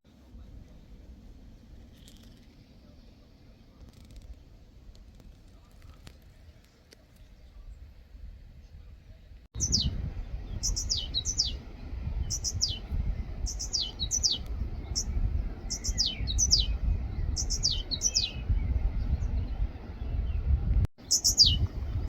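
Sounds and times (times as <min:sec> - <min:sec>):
steady low rumble: 0:00.1 - 0:05.7, 0:07.5 - 0:22.0
songbird calling: 0:09.6 - 0:20.4, 0:21.0 - 0:22.0.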